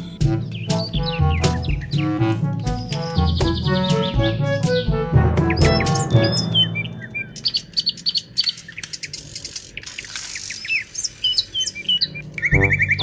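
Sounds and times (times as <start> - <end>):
background music: 0.0 - 8.2, 12.4 - 13.0
birds chirping: 0.0 - 13.0.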